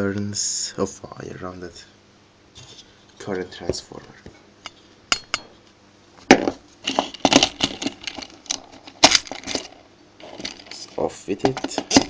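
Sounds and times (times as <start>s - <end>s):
hand tools clicking and scraping: 6.8s - 12.0s.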